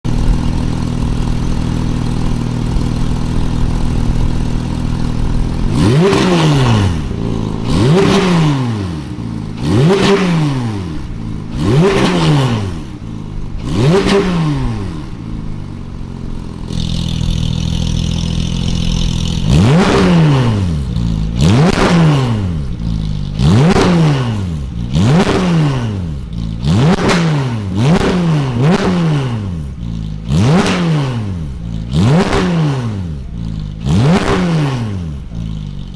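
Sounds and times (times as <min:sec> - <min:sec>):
car engine idling: 0:00.0 - 0:27.0, 0:27.6 - 0:30.6, 0:31.2 - 0:32.4, 0:33.0 - 0:35.9
engine rev blips: 0:05.0 - 0:15.3, 0:16.6 - 0:35.9.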